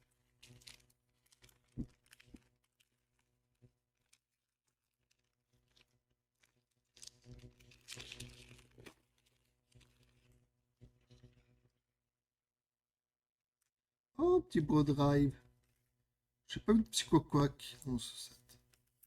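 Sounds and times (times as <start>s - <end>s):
wrapper rustling: 0.0s - 10.3s
foil wrapper tearing and crinkling: 0.0s - 10.4s.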